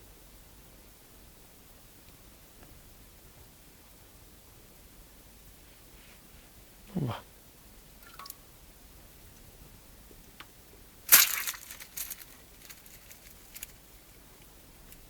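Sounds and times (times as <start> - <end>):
wet leaves crunching: 11.1 - 13.7
scattered crackles: 11.1 - 13.8.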